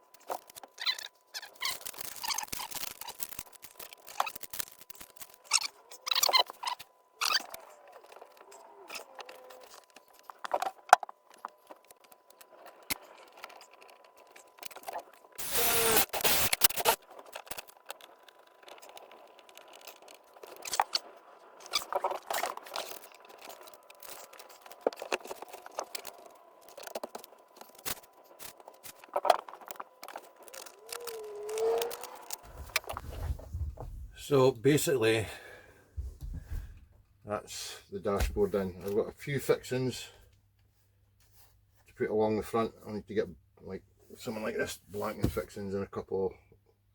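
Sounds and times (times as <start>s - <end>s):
loud rasping burst: 15.4s - 17.0s.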